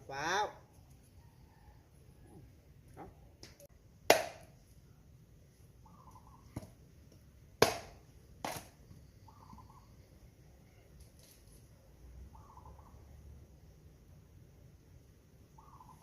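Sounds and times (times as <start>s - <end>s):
sharp cracks: 3.4s - 4.6s.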